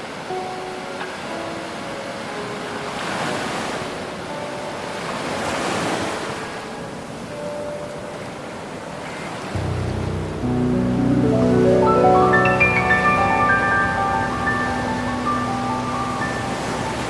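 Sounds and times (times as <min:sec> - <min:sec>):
ocean surf washing in: 0:09.3 - 0:17.0.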